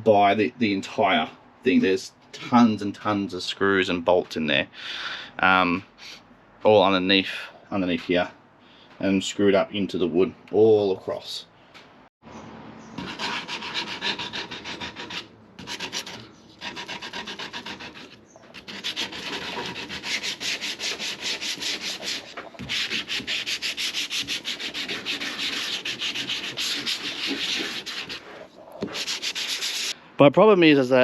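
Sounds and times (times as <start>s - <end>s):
sandpaper rasping strokes: 13.0s - 30.0s.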